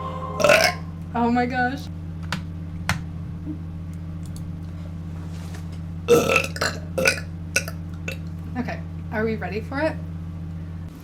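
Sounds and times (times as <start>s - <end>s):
low electrical hum: 0.0s - 11.0s
person burping loudly: 0.4s - 0.8s, 6.1s - 8.3s.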